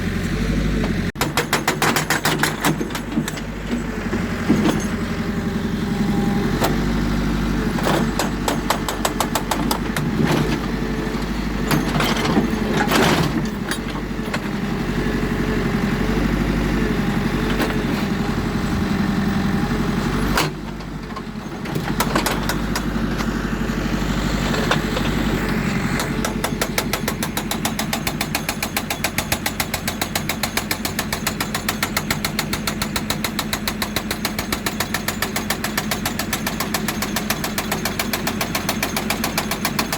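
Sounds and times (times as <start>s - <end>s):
diesel engine running under load: 0.0s - 39.9s
knocks and clatters: 0.8s - 5.1s, 20.4s - 23.4s
hydraulic breaker hammering rock: 1.2s - 5.3s, 7.6s - 14.6s, 20.2s - 39.9s.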